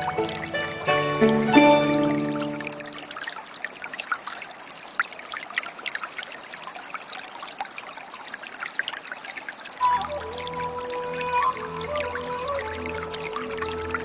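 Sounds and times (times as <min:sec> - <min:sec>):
music held notes: 0:00.0 - 0:03.2
stream trickling and splashing: 0:00.0 - 0:14.0.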